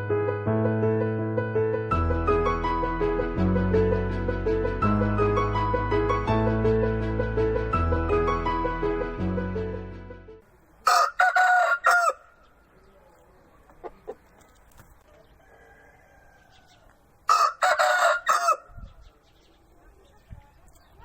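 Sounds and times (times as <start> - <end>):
intro music: 0.0 - 10.4
rooster crowing: 10.8 - 12.4, 15.2 - 18.8.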